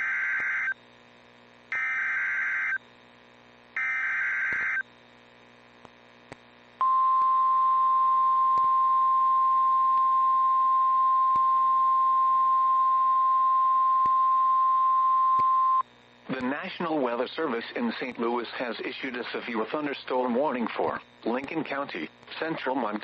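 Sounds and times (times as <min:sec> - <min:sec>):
steady alarm tone: 0:01.8 - 0:02.8, 0:03.8 - 0:04.8.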